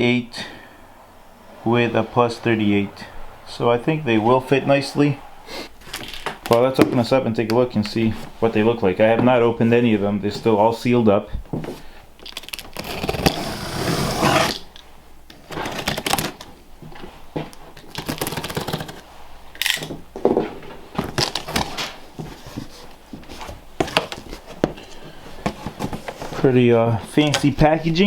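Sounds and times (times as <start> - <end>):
packaging rustling and scraping: 5.7 - 6.3, 11.7 - 14.7, 15.4 - 16.6, 21.0 - 28.0
packaging clicks: 15.5 - 16.5, 17.8 - 19.0.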